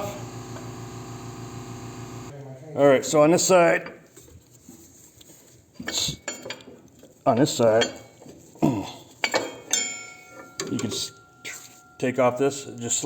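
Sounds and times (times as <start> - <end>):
metal tools clattering: 5.8 - 13.0
person mumbling: 8.6 - 9.1.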